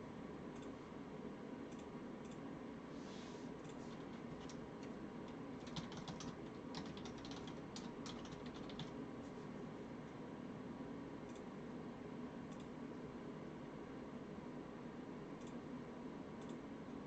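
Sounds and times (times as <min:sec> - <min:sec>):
low room hum: 0:00.0 - 0:17.0
computer keyboard typing: 0:03.6 - 0:09.0.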